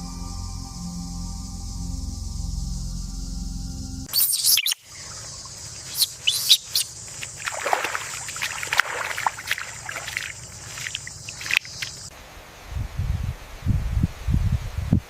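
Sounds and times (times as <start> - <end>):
ambient music: 0.0 - 4.1
high insect hiss: 0.0 - 12.2
birds chirping: 4.1 - 12.1.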